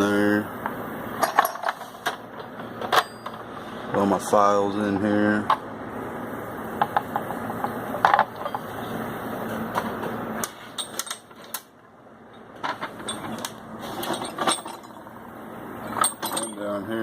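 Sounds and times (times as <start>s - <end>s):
tools clinking: 1.2s - 1.9s, 2.8s - 3.4s, 10.7s - 11.7s, 12.3s - 15.2s, 15.8s - 16.8s
metal drawers sliding: 12.6s - 15.0s.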